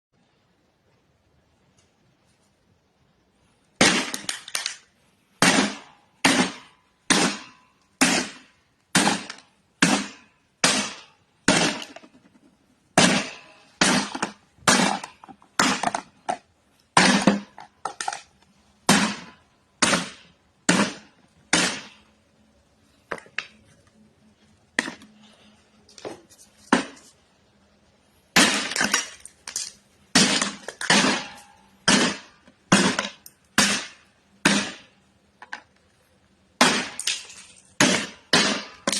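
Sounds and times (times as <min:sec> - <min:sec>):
mallet smashing brittle rubber: 0:03.8 - 0:04.8, 0:05.4 - 0:22.1, 0:26.7 - 0:27.0, 0:28.3 - 0:35.6, 0:36.6 - 0:38.9.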